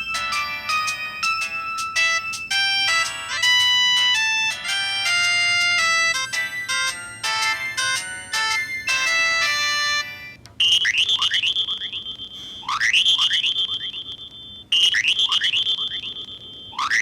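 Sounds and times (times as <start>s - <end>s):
held electronic chord: 0.0s - 10.5s
synthesized ringtone chirps and tone: 0.0s - 17.0s.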